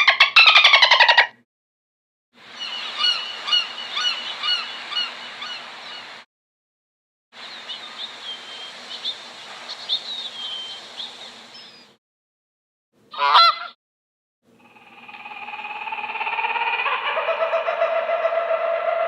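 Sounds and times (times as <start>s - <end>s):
steady background hiss: 2.4s - 6.2s, 7.4s - 11.9s.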